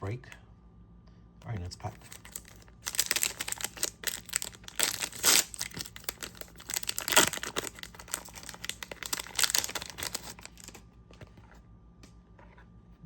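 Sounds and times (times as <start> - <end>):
wrapper tearing and crinkling: 2.0 - 10.8.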